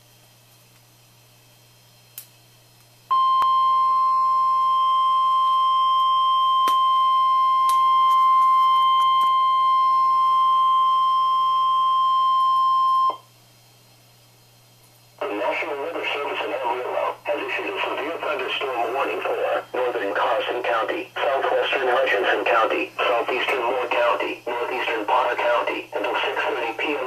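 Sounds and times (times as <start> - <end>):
static hiss: 13.6 - 27.0.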